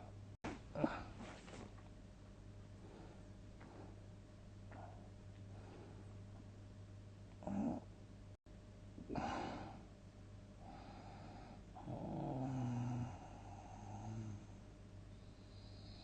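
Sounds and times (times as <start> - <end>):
steady low hum: 0.0 - 16.0
person snoring loudly: 11.8 - 14.5.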